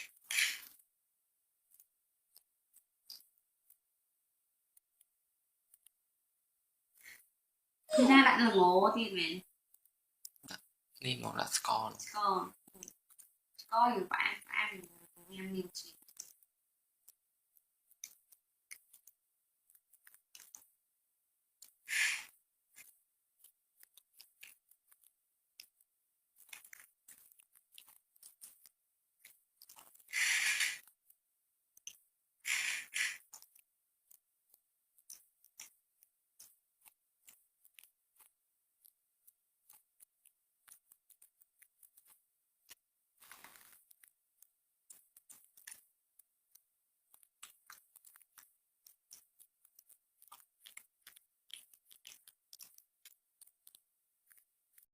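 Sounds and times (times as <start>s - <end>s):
soft clicks and crunching: 1.7s - 3.8s, 4.7s - 6.0s, 9.6s - 11.9s, 12.6s - 13.7s, 15.8s - 20.8s, 21.6s - 30.2s, 30.8s - 32.1s, 33.2s - 54.9s.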